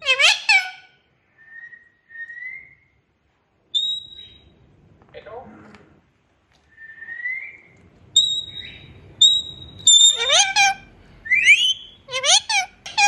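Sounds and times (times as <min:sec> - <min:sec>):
parrot harsh calls: 0:00.0 - 0:01.1, 0:08.2 - 0:13.0
parrot whistling: 0:01.4 - 0:03.0, 0:03.7 - 0:04.5, 0:06.8 - 0:13.0.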